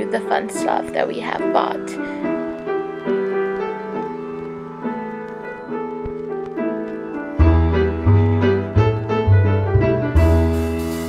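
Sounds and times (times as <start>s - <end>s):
piano playing sustained chords: 0.0s - 11.0s
deep bass line: 7.4s - 11.0s.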